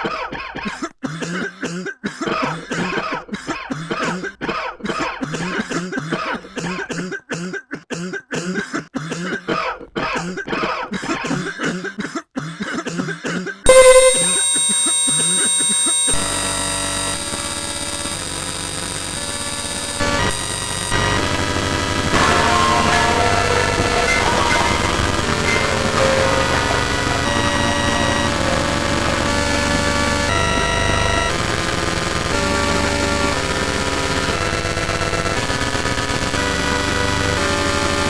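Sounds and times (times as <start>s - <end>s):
person coughing: 0.0s - 13.7s
harsh electronic blast: 13.7s - 15.5s, 16.1s - 32.5s.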